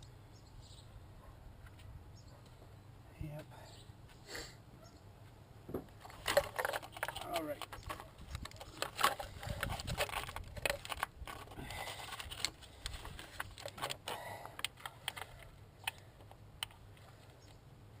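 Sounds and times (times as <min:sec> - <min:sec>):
metal tools clinking: 0:06.0 - 0:12.5.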